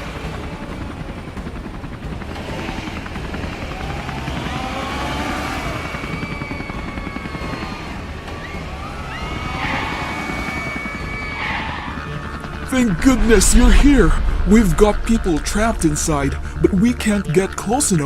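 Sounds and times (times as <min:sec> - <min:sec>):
cartoon helicopter rotor chopping: 0:00.0 - 0:18.0
siren-like tones: 0:05.7 - 0:17.8.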